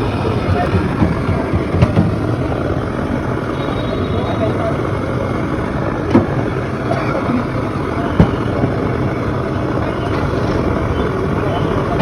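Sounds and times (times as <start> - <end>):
street noise: 0.0 - 12.0
sharp knocks: 0.3 - 2.5.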